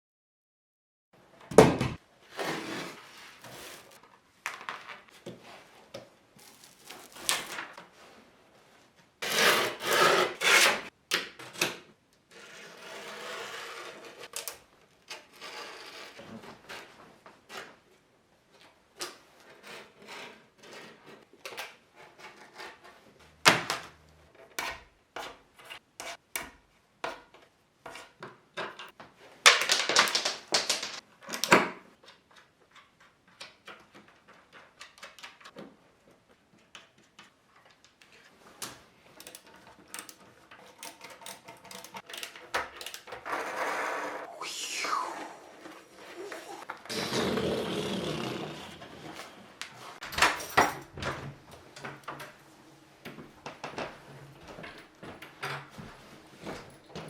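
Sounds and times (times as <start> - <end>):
scraping and rubbing: 2.3 - 4.0.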